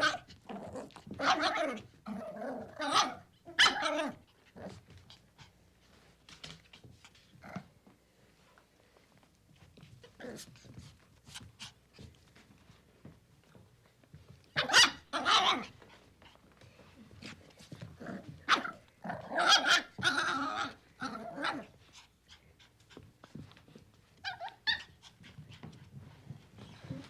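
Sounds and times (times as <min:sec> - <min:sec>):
puppy barking and growling: 0:00.0 - 0:04.8, 0:14.6 - 0:15.8, 0:18.0 - 0:21.8.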